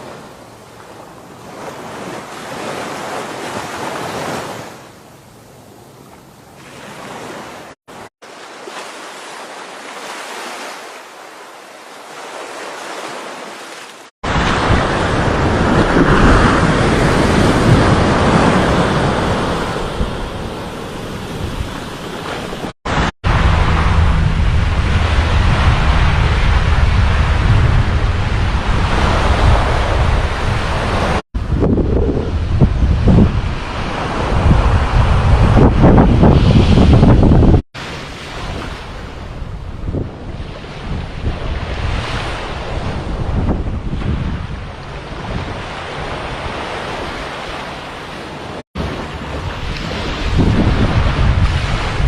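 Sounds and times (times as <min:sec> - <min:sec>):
sea waves washing up shore: 0:00.0 - 0:04.9, 0:06.1 - 0:31.2, 0:32.4 - 0:52.0
wind rumbling on microphone: 0:14.3 - 0:37.6, 0:38.3 - 0:47.6, 0:48.4 - 0:52.0.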